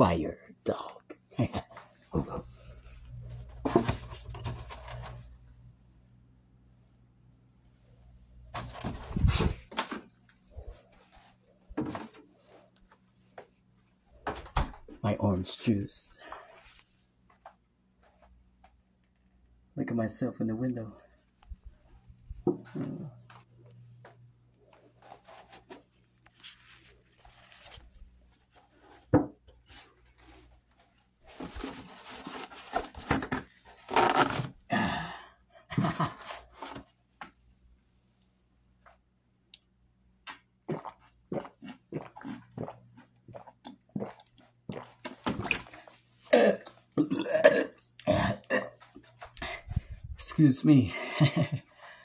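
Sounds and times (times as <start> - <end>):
person gulping a drink: 40.3 - 48.8
person burping loudly: 46.3 - 48.8.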